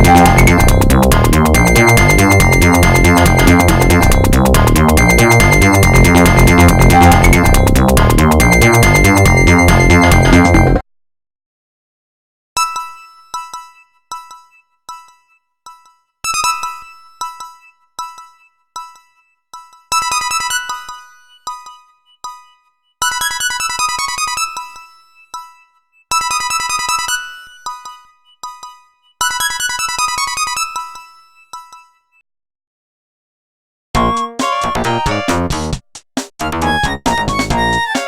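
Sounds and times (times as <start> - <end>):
electronic ringtone melody: 0.0 - 10.8, 34.0 - 35.4, 36.4 - 38.0.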